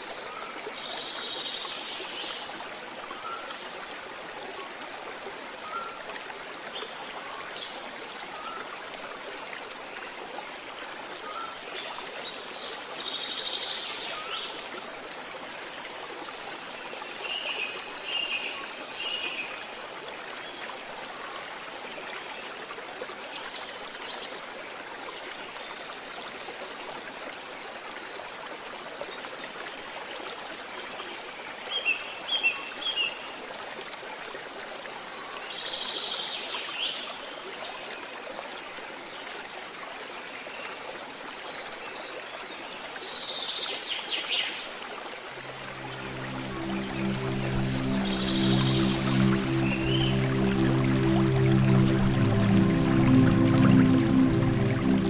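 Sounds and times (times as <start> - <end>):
stream running over rocks: 0.0 - 55.0.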